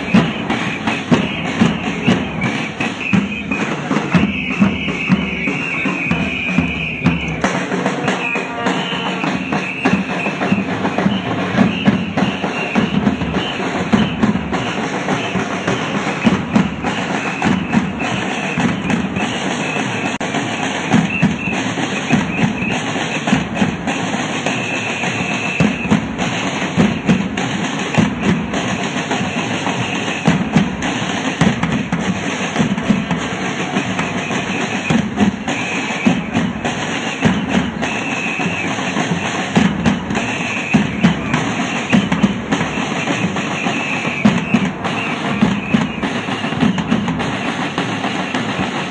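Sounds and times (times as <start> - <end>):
drums beating: 0.0 - 48.9.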